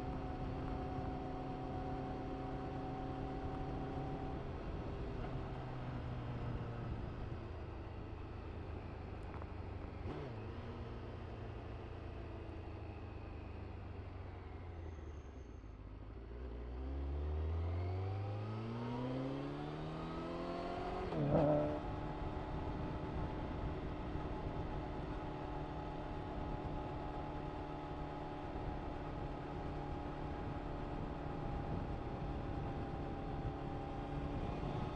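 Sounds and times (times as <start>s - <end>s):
motorcycle engine accelerating: 16.9s - 34.9s.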